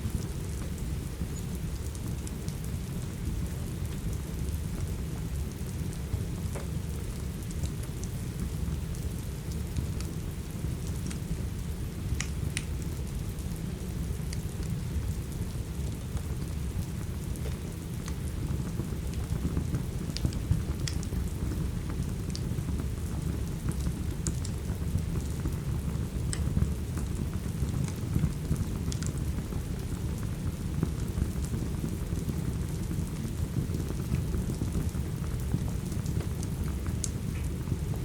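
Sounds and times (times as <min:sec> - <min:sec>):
crackling wood fire: 0:00.0 - 0:38.0
steady rain rumble: 0:00.0 - 0:38.0.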